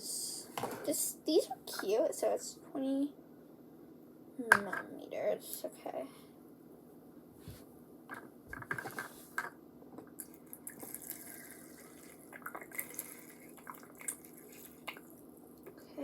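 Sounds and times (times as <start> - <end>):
liquid trickling into cup: 10.2 - 15.2.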